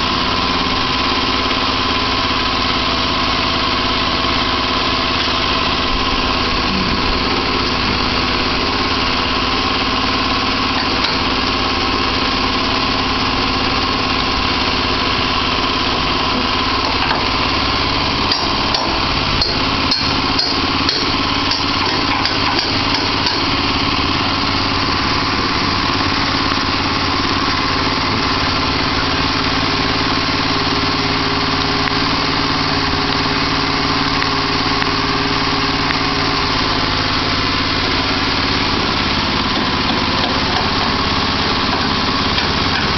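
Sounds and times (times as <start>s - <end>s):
small engine running: 0.0s - 42.9s
sharp clicks and knocks: 18.3s - 23.7s, 39.2s - 42.9s.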